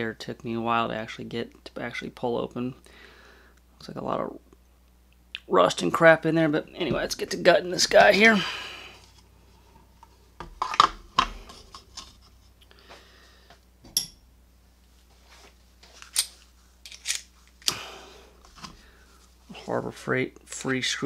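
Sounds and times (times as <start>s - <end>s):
metal tools clicking and scraping: 16.0s - 17.7s.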